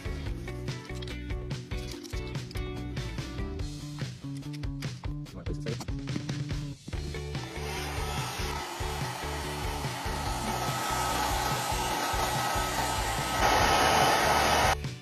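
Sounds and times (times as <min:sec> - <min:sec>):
background music: 0:00.0 - 0:15.0
blower rushing with whine: 0:07.4 - 0:14.8.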